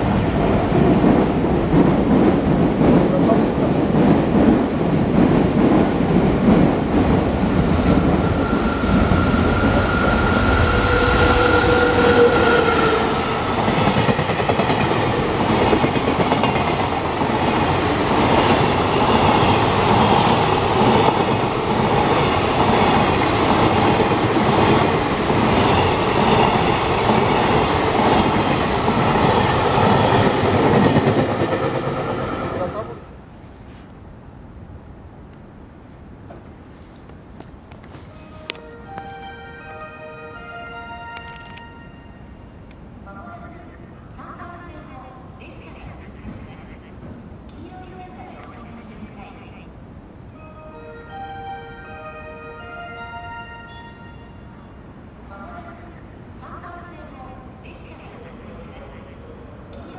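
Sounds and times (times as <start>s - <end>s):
train wheels clattering over rails: 0.0s - 32.8s.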